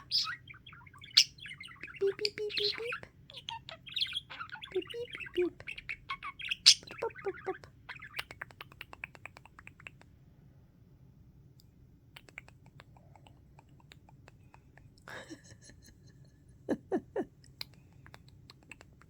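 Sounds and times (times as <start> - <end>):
budgie beak clicking: 8.1 - 10.2, 12.1 - 14.9, 17.6 - 19.0.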